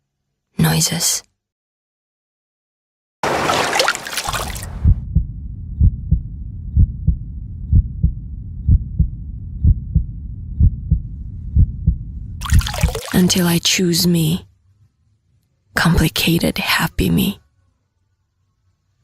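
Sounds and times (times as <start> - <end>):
low rumble: 4.6 - 12.4
heartbeat thumps: 4.6 - 13.1.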